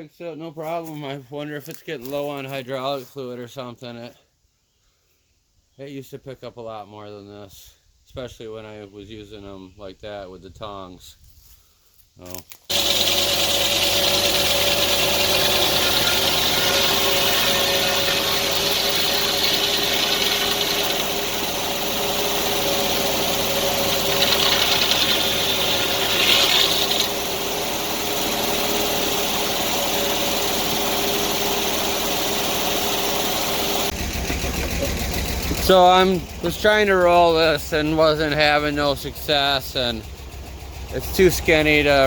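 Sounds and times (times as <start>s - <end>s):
engine running steadily: 12.7s - 42.0s.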